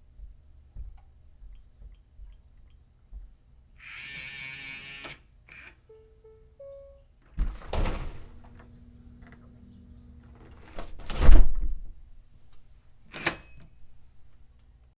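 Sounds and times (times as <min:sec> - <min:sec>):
keypad lock beeps: 0:05.0 - 0:07.1, 0:13.1 - 0:13.8
door thud: 0:07.4 - 0:09.6, 0:10.4 - 0:14.3
door lock clunk: 0:07.4 - 0:14.4
sharp lock click: 0:12.5 - 0:14.3.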